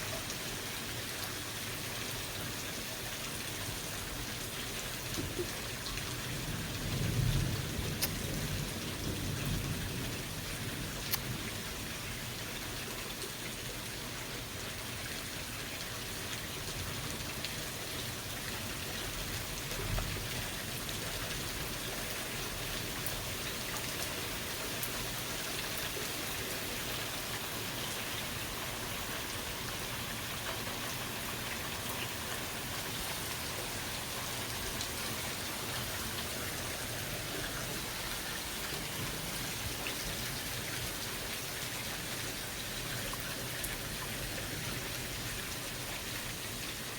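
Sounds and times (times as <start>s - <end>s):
raindrops ticking on surfaces: 0.0s - 46.9s
steady rain: 0.0s - 46.9s.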